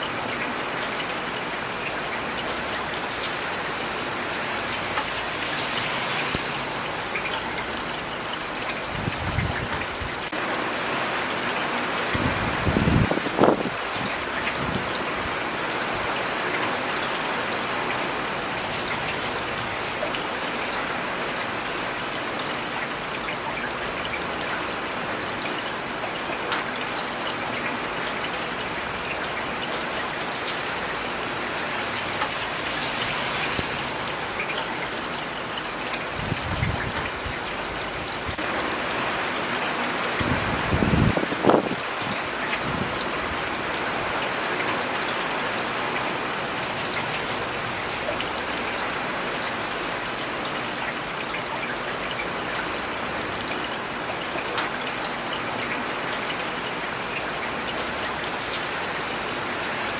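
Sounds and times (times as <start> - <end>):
steady rain: 0.0 - 59.9.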